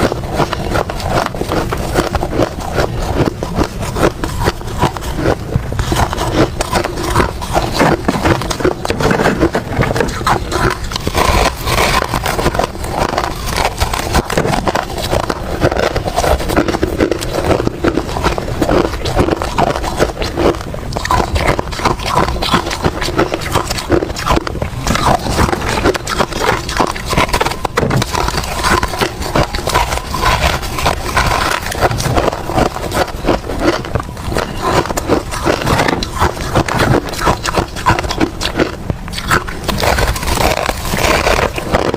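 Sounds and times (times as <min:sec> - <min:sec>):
crunching and chewing ice: 0:00.0 - 0:41.9.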